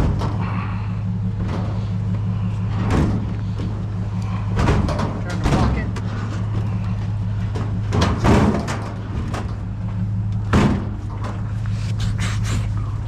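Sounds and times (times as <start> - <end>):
vehicle engine idling: 0.0 - 13.0
sharp knocks and bangs: 1.3 - 9.8, 10.4 - 11.6.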